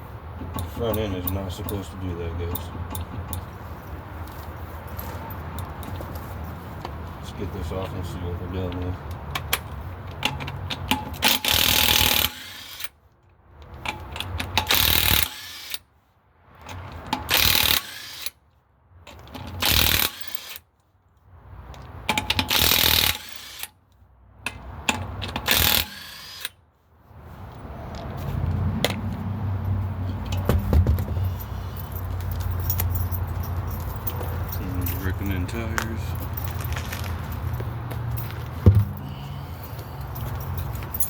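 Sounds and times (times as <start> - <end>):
impact wrench bursts: 11.0 - 12.9, 14.6 - 15.8, 17.2 - 18.4, 19.5 - 20.6, 22.1 - 23.7, 25.3 - 26.6.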